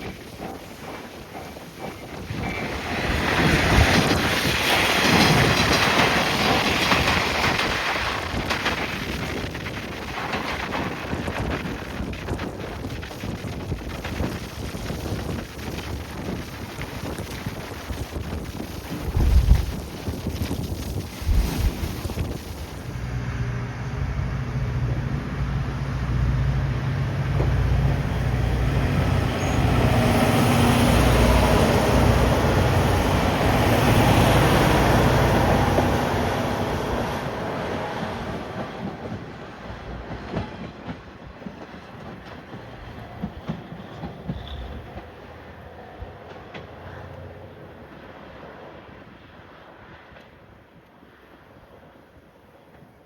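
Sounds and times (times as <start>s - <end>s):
diesel railcar engine passing: 0.0s - 11.1s, 22.7s - 53.0s
train wheels on rails: 0.0s - 53.0s.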